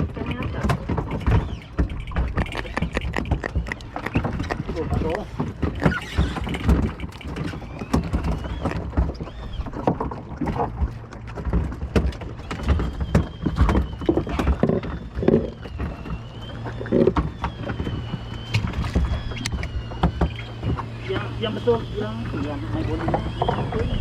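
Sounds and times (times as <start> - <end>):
boat engine hum: 0.0 - 24.0
water slapping against hull: 0.0 - 24.0
faint wavering whine: 12.4 - 24.0.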